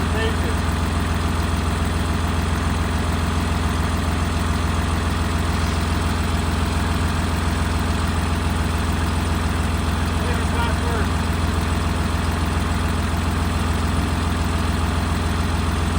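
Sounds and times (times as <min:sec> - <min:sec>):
vehicle engine humming: 0:00.0 - 0:15.9.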